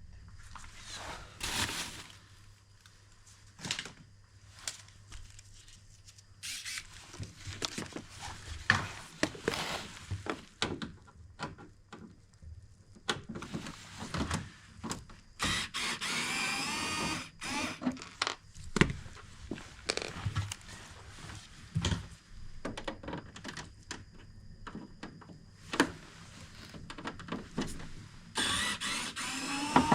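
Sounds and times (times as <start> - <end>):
electric screwdriver whirring: 6.4 - 6.9, 15.4 - 17.8, 28.4 - 29.9.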